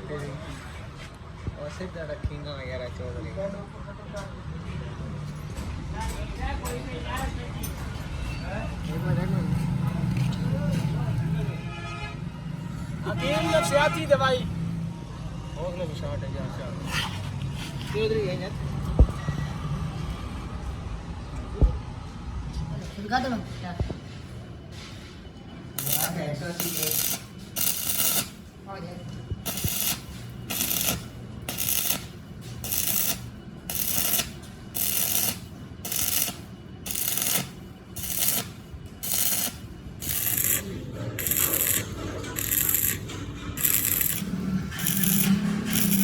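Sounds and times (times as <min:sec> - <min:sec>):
hand tool rasping metal: 0:32.6 - 0:43.0, 0:43.6 - 0:46.0.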